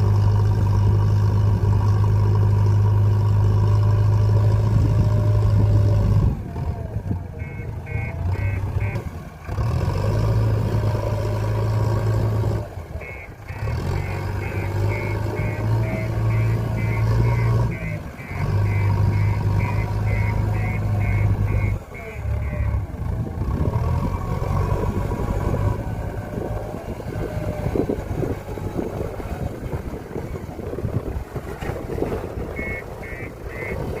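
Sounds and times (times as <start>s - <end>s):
diesel engine running: 0.0s - 34.0s
engine clatter: 0.0s - 34.0s
reversing alarm beeping: 7.4s - 9.0s, 13.0s - 22.8s, 32.5s - 34.0s.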